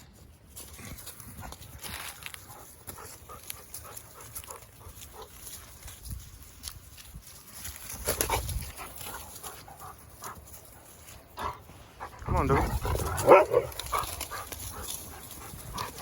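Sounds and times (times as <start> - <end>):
dogs vocalizing: 11.4 - 16.0.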